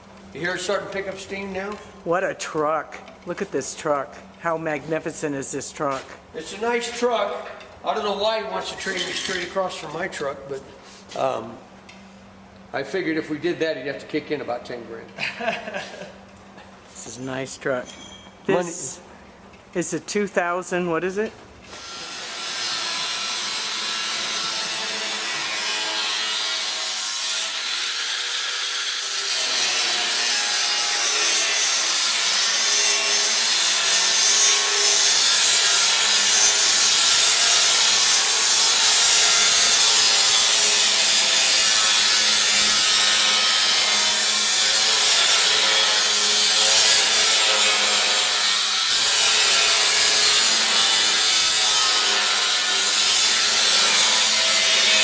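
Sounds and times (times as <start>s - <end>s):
power tool cutting steel: 21.7s - 55.0s.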